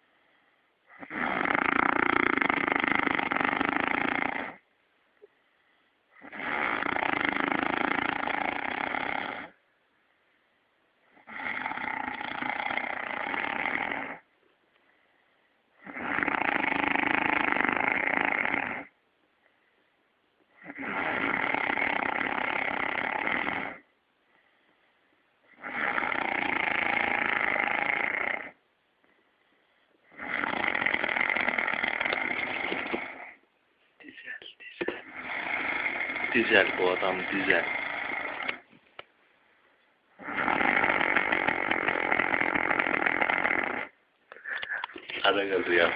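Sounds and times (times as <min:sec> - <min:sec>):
man snoring: 0:00.9 - 0:04.7, 0:06.2 - 0:09.6, 0:11.1 - 0:14.3, 0:15.8 - 0:19.0, 0:20.6 - 0:23.9, 0:25.5 - 0:28.6, 0:30.1 - 0:33.4, 0:34.8 - 0:38.7, 0:40.1 - 0:45.9.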